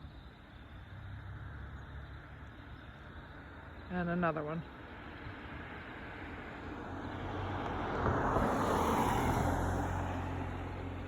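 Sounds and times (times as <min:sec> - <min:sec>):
low engine hum: 0:00.0 - 0:11.0
tyre and road noise: 0:04.2 - 0:11.0
vehicle passing by: 0:05.4 - 0:11.0.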